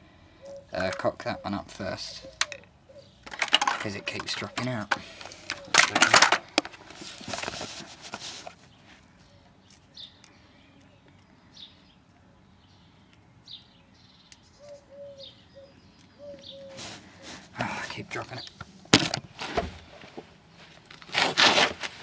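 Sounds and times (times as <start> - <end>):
rustling and clicking handling noise: 2.4 - 11.4, 18.3 - 22.0.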